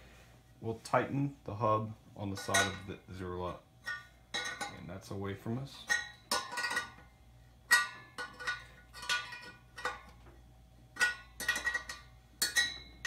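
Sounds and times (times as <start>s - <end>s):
spoke wrench clinking on metal spokes: 5.9s - 7.0s, 7.7s - 10.2s, 11.0s - 13.0s.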